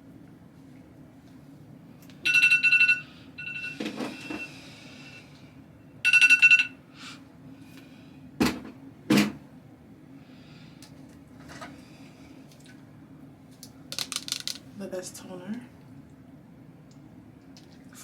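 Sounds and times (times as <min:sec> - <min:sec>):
electronic ringing trill: 0:02.2 - 0:04.4, 0:06.0 - 0:06.8.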